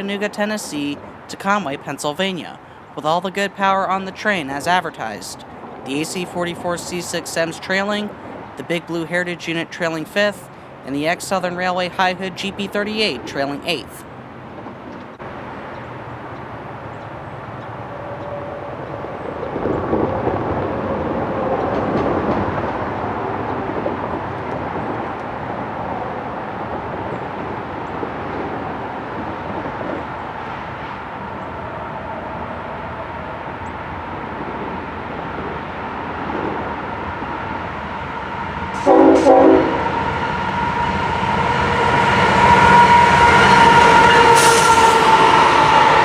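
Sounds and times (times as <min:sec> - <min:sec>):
diesel locomotives passing: 0:00.0 - 0:46.0.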